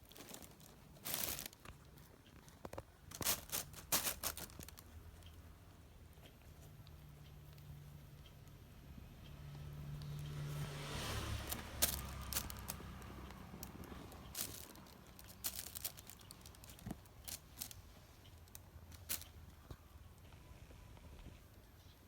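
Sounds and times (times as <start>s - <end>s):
kitten tearing grass rustles: 0.0s - 4.9s, 10.2s - 19.4s.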